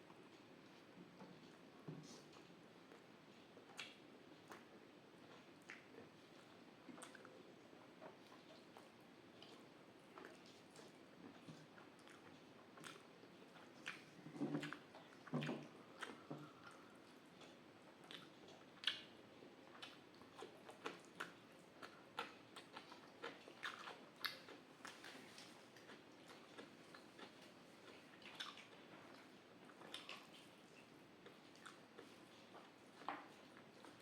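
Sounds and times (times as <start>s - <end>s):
person chewing food: 8.0s - 34.0s.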